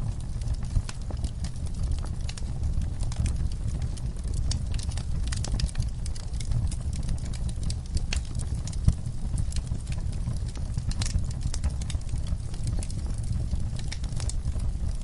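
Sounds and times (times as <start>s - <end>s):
campfire crackling and popping: 0.0s - 15.0s
low fire rumble: 0.0s - 15.0s.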